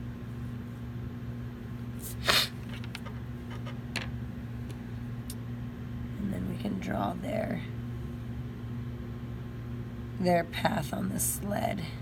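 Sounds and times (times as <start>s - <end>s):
steady low hum: 0.0s - 12.0s
woman sneezing: 2.0s - 2.6s.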